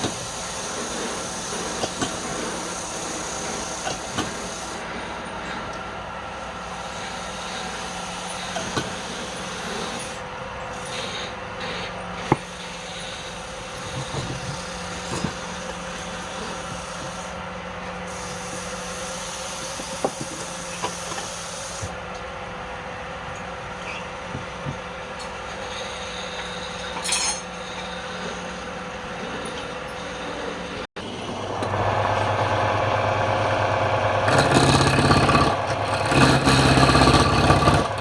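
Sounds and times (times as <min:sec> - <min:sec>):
hiss: 0:00.0 - 0:04.8, 0:06.6 - 0:10.2, 0:10.8 - 0:17.4, 0:18.1 - 0:22.0
wood lathe motor hum: 0:31.3 - 0:38.0.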